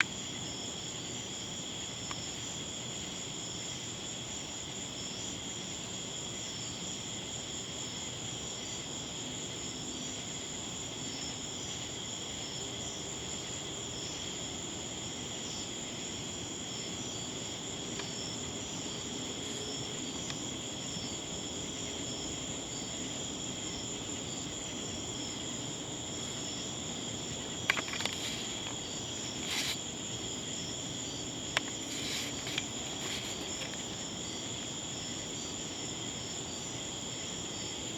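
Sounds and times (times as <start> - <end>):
high-pitched insect chorus: 0.0 - 37.9.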